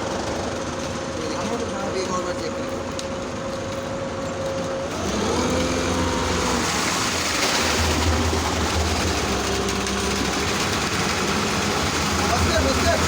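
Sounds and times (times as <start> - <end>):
concrete mixer truck engine hum: 0.0 - 13.0
concrete rushing: 5.6 - 13.0.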